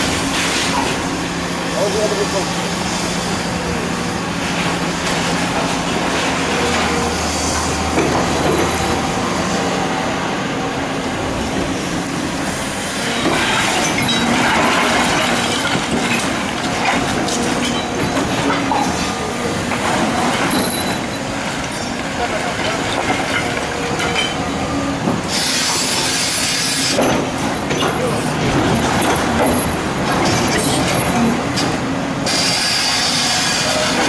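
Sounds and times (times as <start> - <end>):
excavator engine hum: 0.0 - 34.0
metallic clanking and squealing: 13.0 - 22.0.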